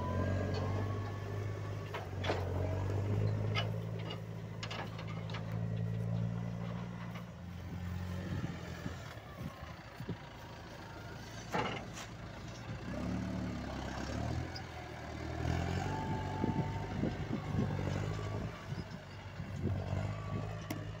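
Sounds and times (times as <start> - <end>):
tractor diesel engine revving: 0.0 - 21.0
metal clanks and knocks: 0.5 - 7.5.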